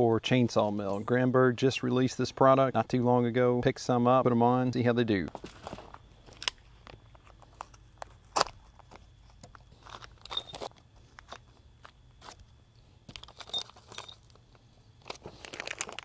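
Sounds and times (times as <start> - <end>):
packaging crinkling: 13.1 - 16.0.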